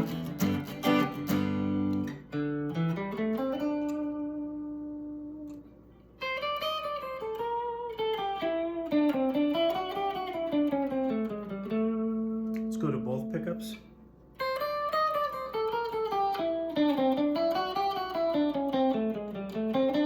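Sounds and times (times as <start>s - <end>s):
electric guitar strummed chords: 0.0s - 13.8s, 14.4s - 20.0s
electric guitar melodic line: 0.0s - 20.0s.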